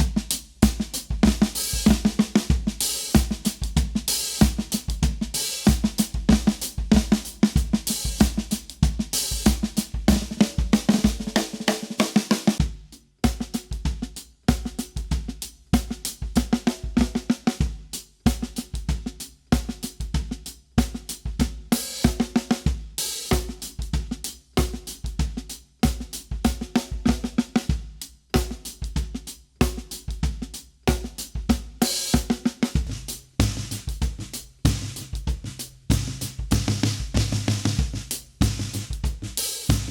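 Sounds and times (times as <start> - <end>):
drum kit groove: 0.0 - 39.9
hi-hat and cymbals: 0.0 - 39.9
snare drum: 0.0 - 39.9.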